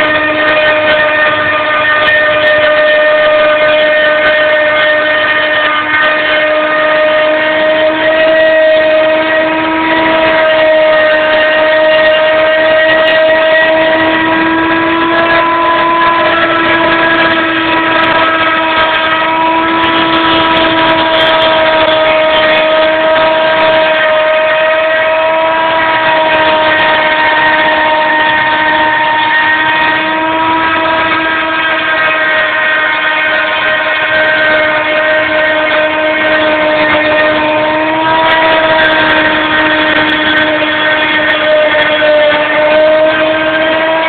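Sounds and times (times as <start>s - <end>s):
milling spindle whining: 0.0s - 44.0s.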